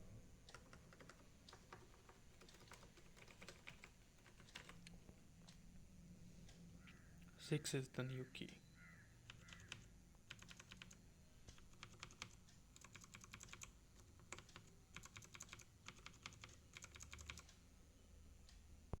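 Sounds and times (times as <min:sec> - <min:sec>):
clicky keyboard typing: 0:00.4 - 0:05.2, 0:09.2 - 0:17.6.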